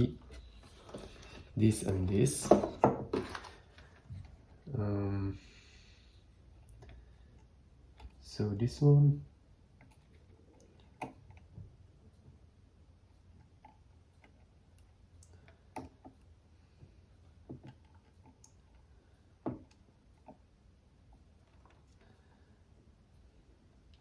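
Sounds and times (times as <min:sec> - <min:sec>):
faint low hum: 0:00.0 - 0:24.0.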